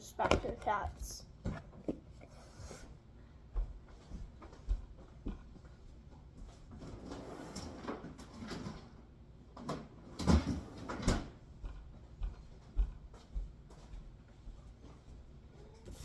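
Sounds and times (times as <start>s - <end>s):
rustling and handling noise: 0.0s - 2.9s.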